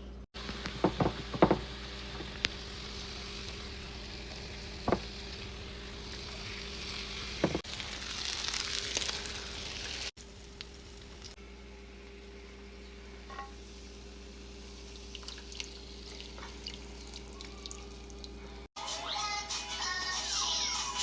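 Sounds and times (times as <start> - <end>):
fish sizzling in hot oil: 0.4 - 11.4, 13.5 - 17.1
utensil knocking against pan: 0.8 - 2.4, 4.9 - 5.1, 7.4 - 7.6.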